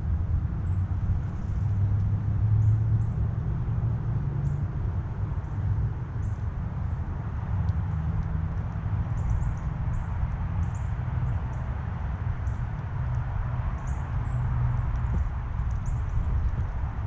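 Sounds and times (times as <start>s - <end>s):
road traffic rumble: 0.0s - 17.0s
small birds chirping: 7.8s - 17.0s.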